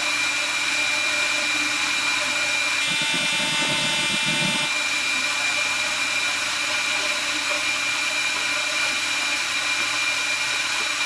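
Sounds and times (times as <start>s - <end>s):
machine whirring hiss: 2.8s - 4.7s
thin high whine: 2.8s - 4.8s.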